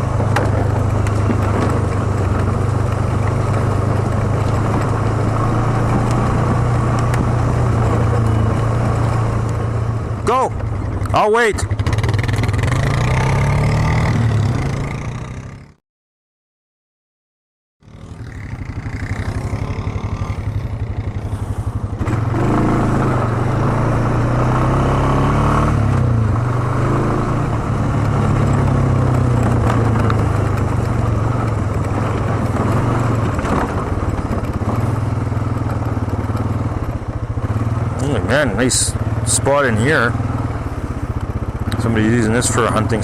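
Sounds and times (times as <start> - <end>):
quad bike engine running: 0.0 - 15.8, 17.8 - 43.0.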